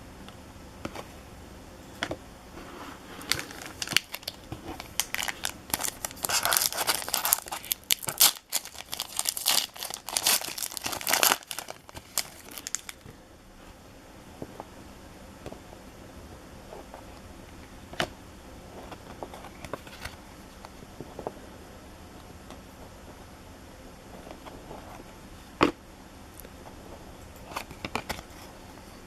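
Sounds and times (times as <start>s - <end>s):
wrapper tearing and crinkling: 3.2s - 13.0s.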